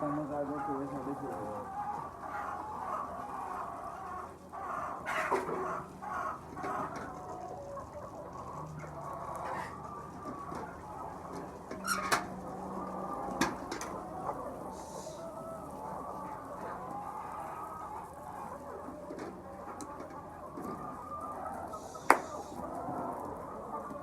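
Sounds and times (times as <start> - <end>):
hens clucking: 0.0 - 24.0
sharp clicks or knocks: 22.1 - 22.3.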